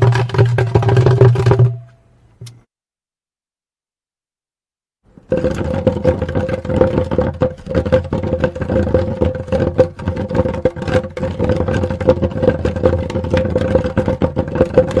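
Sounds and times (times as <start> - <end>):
wooden barrel rolling on pavement: 0.0 - 2.0, 5.1 - 15.0.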